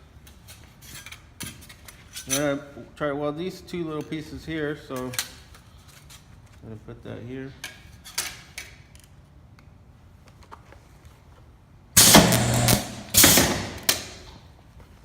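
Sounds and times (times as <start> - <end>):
loud transformer hum: 12.0 - 13.9
crackling weld spatter: 12.0 - 14.2.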